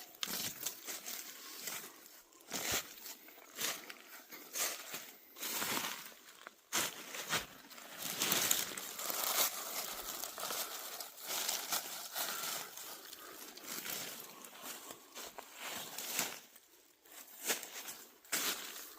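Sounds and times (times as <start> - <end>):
dry leaves rustling and crunching: 0.0 - 18.9.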